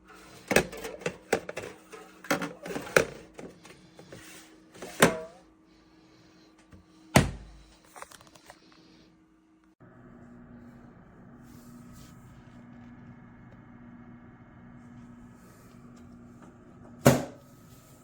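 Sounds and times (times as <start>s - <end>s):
loud thunks: 7.2s - 7.6s.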